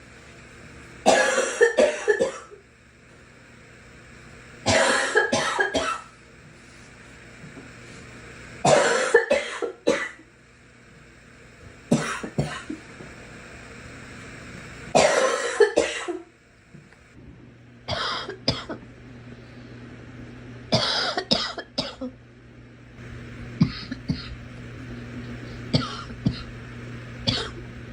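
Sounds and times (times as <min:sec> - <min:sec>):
girl coughing: 0:01.1 - 0:02.5, 0:04.7 - 0:06.1, 0:08.7 - 0:10.2, 0:11.9 - 0:12.8, 0:15.0 - 0:16.2, 0:17.9 - 0:18.8, 0:20.7 - 0:22.1, 0:23.6 - 0:24.4, 0:25.7 - 0:26.5, 0:27.3 - 0:27.6.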